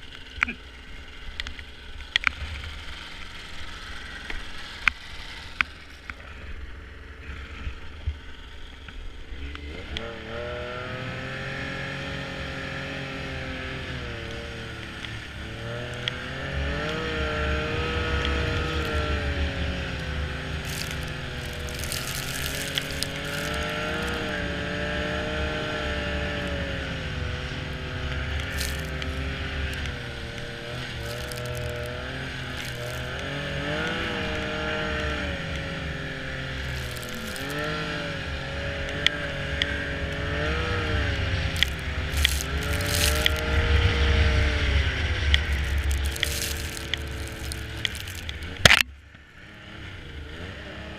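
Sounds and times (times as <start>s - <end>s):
snowmobile engine revving: 9.3s - 48.8s.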